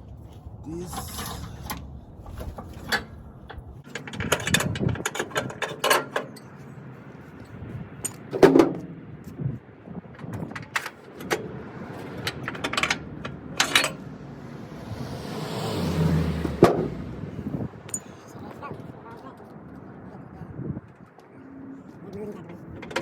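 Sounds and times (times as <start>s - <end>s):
metallic clicks and rattles: 10.2s - 14.0s.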